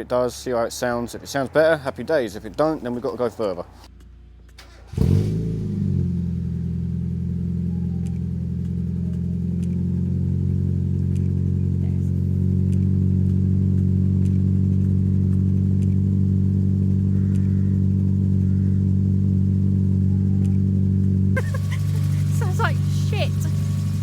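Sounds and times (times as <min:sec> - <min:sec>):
car engine idling rough: 0:04.9 - 0:24.0.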